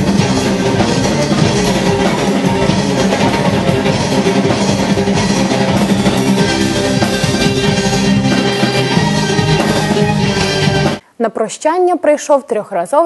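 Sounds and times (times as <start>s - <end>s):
symphonic rock music: 0.0s - 11.0s.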